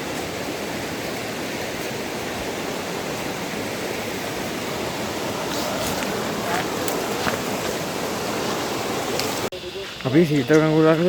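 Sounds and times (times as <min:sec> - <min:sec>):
stream water rushing: 0:00.0 - 0:09.5.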